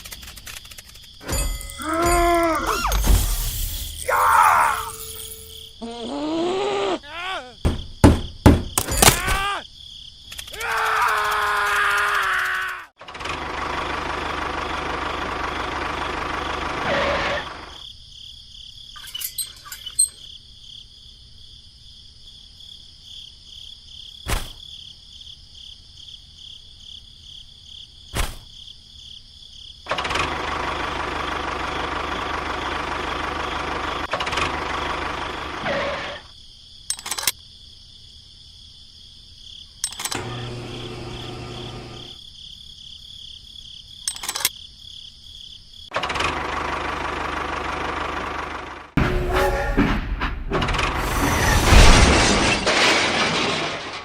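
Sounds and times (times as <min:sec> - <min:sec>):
sharp clicks: 0:00.0 - 0:01.3, 0:10.2 - 0:12.9
crickets chirping: 0:00.0 - 0:12.9, 0:17.4 - 0:30.0, 0:34.9 - 0:46.0
small engine running: 0:13.0 - 0:17.7, 0:29.9 - 0:35.7, 0:40.0 - 0:42.2, 0:46.0 - 0:49.0.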